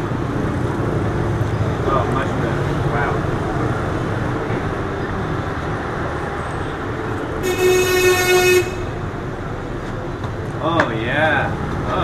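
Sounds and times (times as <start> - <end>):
street traffic: 0.0 - 12.0
vehicle horn blast: 7.4 - 9.1.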